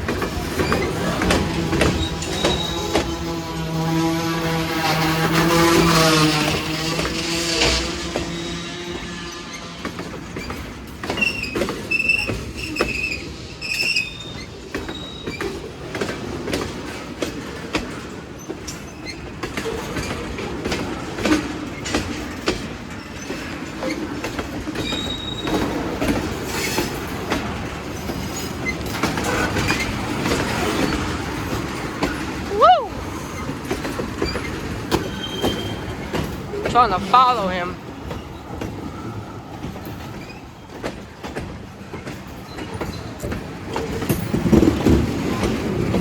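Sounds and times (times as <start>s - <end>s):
wheels clacking over rail joints: 0.0s - 46.0s
high-pitched wheel squeals: 0.4s - 15.5s, 24.8s - 25.8s, 28.0s - 36.8s.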